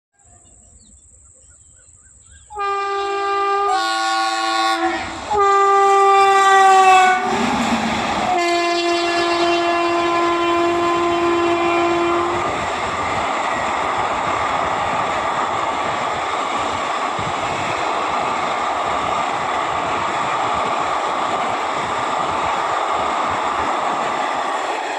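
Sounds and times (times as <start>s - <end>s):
locomotive air horn blasts: 2.5s - 12.5s
train wheels rumbling on rails: 3.7s - 24.9s.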